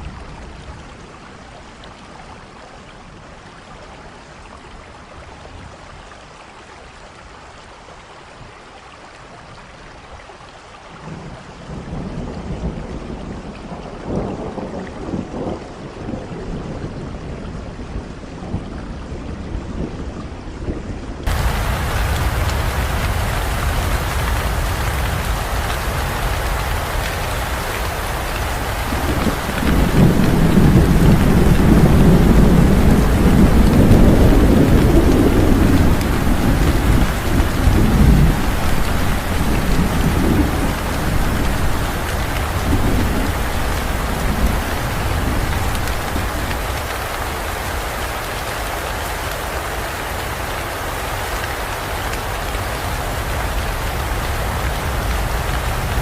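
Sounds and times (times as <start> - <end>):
heavy rain falling: 0.0 - 56.0
thunder rumbling: 21.3 - 48.4, 52.6 - 56.0.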